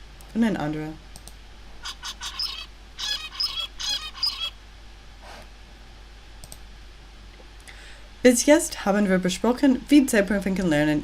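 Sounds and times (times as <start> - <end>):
finch singing: 1.8 - 4.6.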